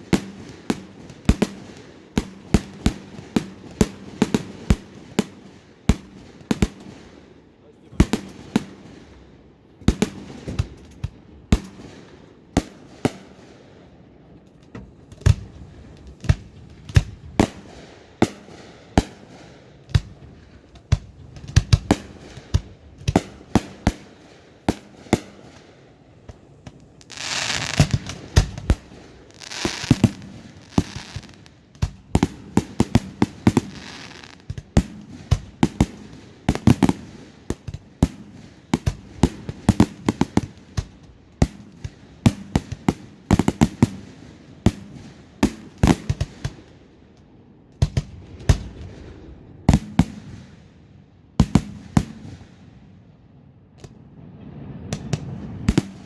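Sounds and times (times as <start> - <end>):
fireworks bangs: 0.0 - 46.9, 47.8 - 56.0
hissing crackling firework burst: 26.2 - 31.6, 32.2 - 34.6.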